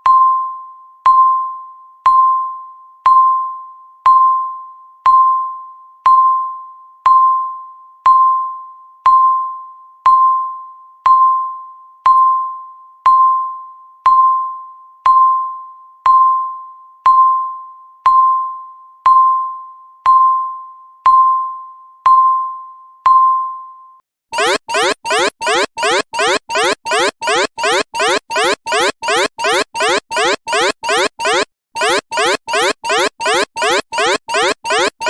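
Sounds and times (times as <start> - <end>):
countdown timer beeping: 24.4 - 35.0.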